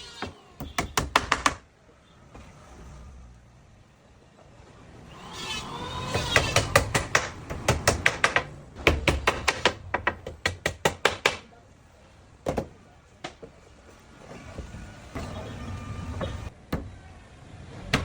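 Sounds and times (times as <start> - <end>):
hammer striking wood: 0.6 - 1.6, 6.1 - 11.5.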